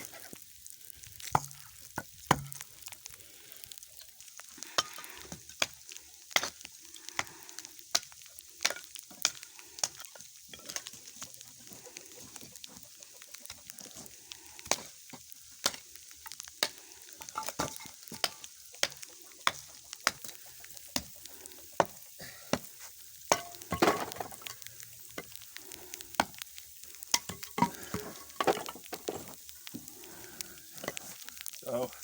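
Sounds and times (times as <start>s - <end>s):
hatchet splitting wood: 2.3s - 2.6s.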